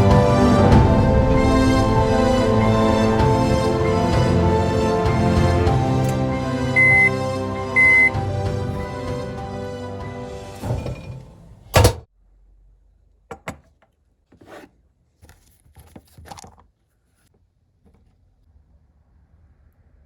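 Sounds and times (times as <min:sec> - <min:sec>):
loud thunk: 0:10.6 - 0:12.1.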